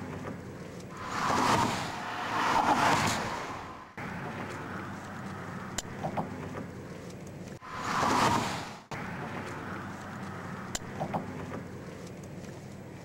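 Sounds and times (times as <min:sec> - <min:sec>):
road traffic noise: 0:00.0 - 0:13.0
vehicle passing by: 0:00.9 - 0:12.0.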